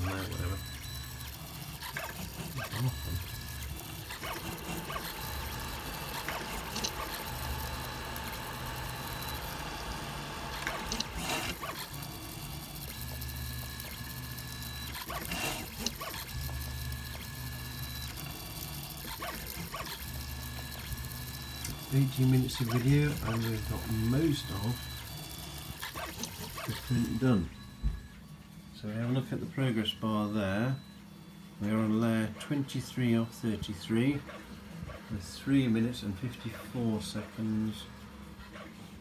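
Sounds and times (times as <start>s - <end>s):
stepper motors humming and whining: 0.0s - 28.4s.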